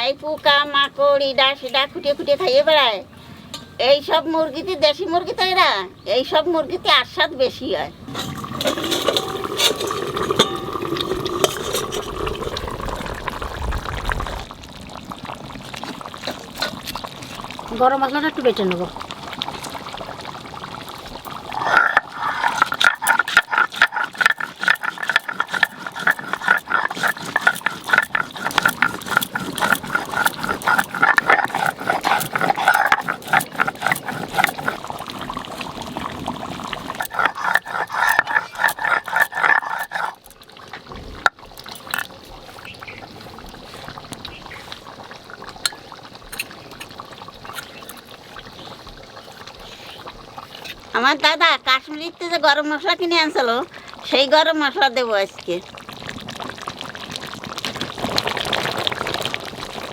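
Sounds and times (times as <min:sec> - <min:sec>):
stone grinding on stone slab: 0:08.1 - 0:12.9, 0:21.5 - 0:35.7, 0:36.8 - 0:40.3.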